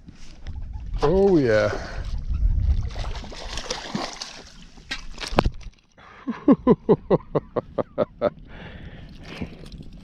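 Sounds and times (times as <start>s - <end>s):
fish splashing in water: 2.8s - 5.4s.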